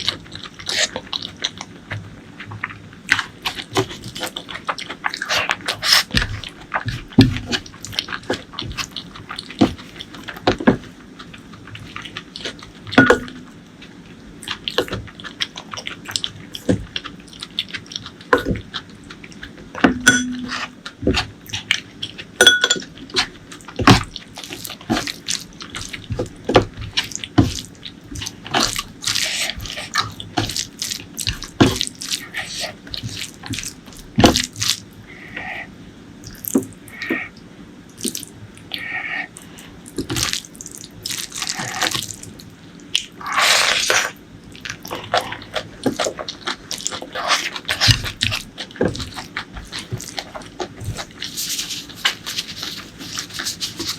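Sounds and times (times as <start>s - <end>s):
wet chewing and lip smacking: 11.0s - 19.8s, 23.0s - 35.6s, 36.2s - 53.9s.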